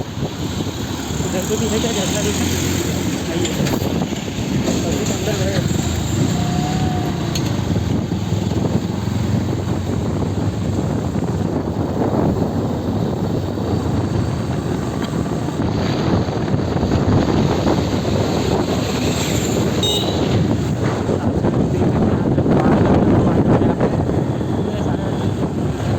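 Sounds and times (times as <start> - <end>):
wind buffeting microphone: 0.0 - 25.9.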